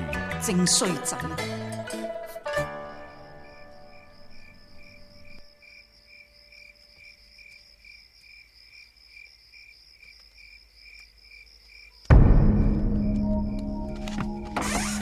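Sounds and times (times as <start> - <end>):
music: 0.0 - 5.4, 12.1 - 15.0
crickets chirping: 1.4 - 15.0
loud low hit: 12.1 - 15.0.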